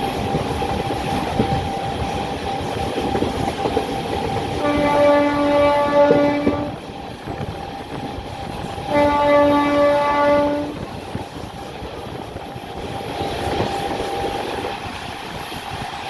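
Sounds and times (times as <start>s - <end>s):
moving train rail clatter: 0.0s - 16.0s
train horn blast: 4.5s - 6.9s, 8.8s - 10.9s.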